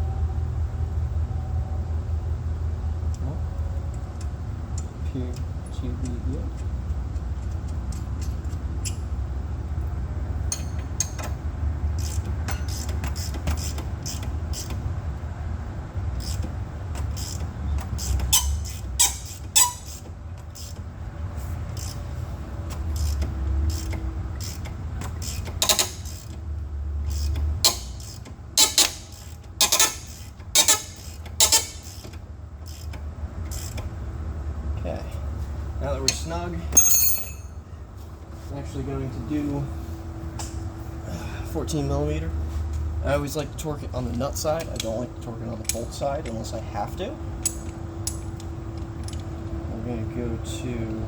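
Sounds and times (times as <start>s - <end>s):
hand tools clicking on metal bolt: 23.0s - 26.4s, 27.1s - 33.8s, 36.1s - 37.5s.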